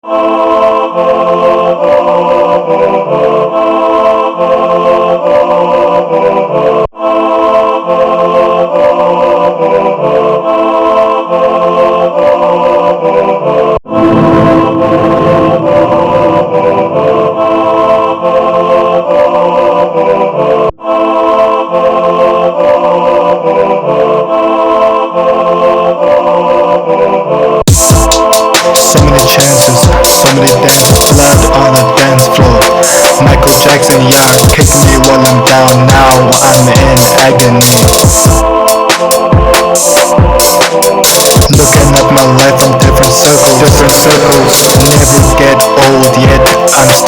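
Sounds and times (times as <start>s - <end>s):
hip-hop organ chord progression: 27.7s - 47.0s.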